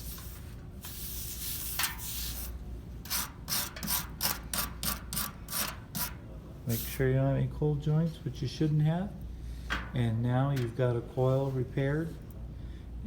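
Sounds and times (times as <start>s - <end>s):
scrubbing strokes on metal: 0.0s - 7.0s.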